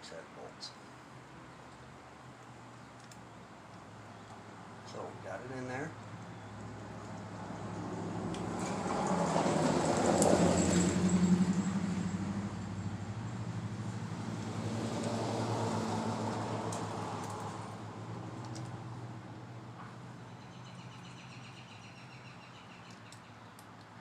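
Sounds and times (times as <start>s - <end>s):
vehicle engine passing: 6.5s - 21.4s.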